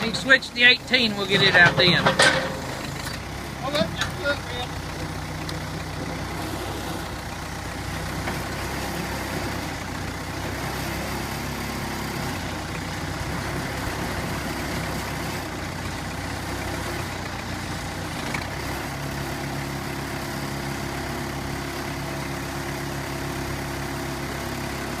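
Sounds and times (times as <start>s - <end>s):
backhoe engine running: 0.0s - 25.0s.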